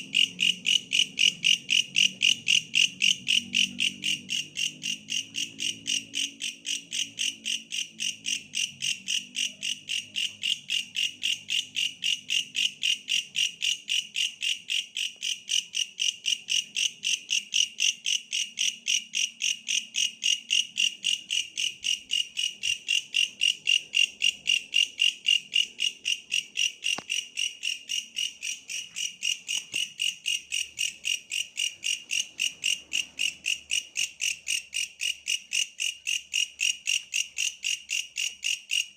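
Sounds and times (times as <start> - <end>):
grasshopper calling: 0.1 - 13.8.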